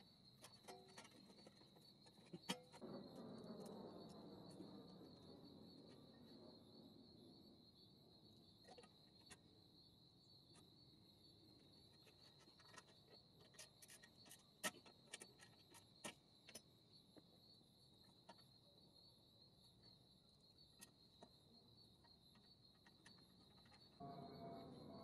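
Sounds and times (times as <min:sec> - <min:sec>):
faint high-pitched tone: 0:23.9 - 0:25.0.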